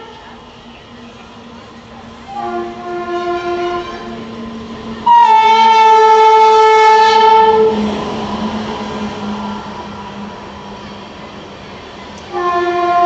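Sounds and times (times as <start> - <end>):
train rumbling: 0.0 - 13.0
train horn blast: 2.3 - 4.3, 5.0 - 8.0, 12.3 - 13.0.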